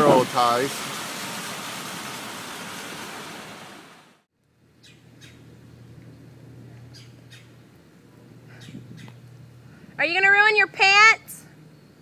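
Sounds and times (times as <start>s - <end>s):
low steady hum: 4.4s - 10.4s
bird chirping: 4.8s - 5.5s, 6.8s - 7.6s.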